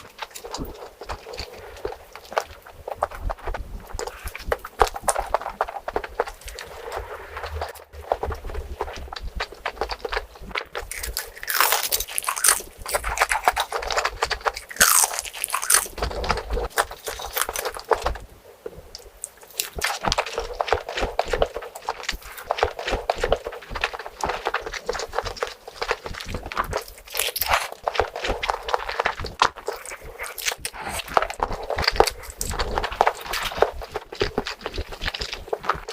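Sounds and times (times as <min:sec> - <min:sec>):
person chewing crunchy food: 0:00.0 - 0:35.9.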